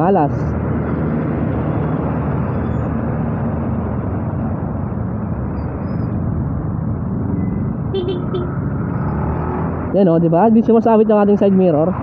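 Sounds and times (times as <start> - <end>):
road and wind noise: 0.0 - 12.0
motorcycle engine running: 7.9 - 8.8.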